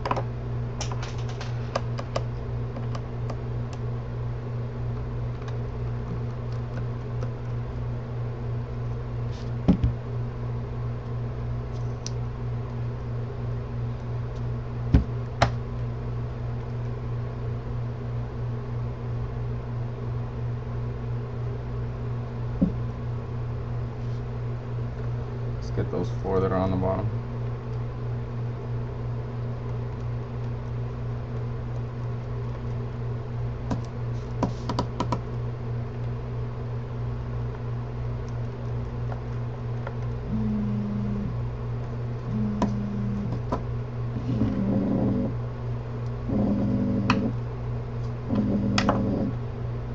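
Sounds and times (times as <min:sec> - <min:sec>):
steady low hum: 0:00.0 - 0:49.9
sharp knocks and clicks: 0:33.7 - 0:35.2.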